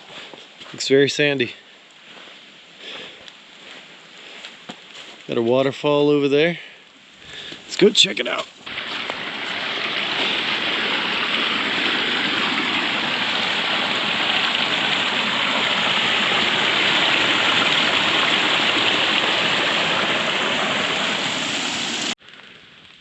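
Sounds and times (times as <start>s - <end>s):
waterfall rushing and splashing: 8.6s - 22.2s.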